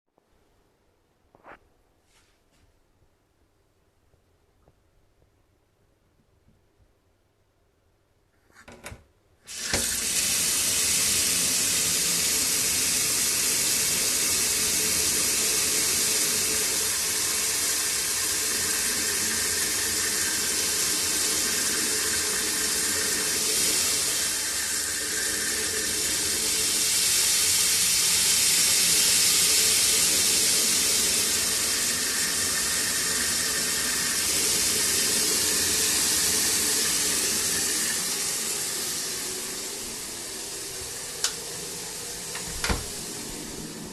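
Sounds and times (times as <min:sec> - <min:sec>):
tap water running with hiss: 0:09.5 - 0:43.9
tap knocks: 0:42.3 - 0:42.9.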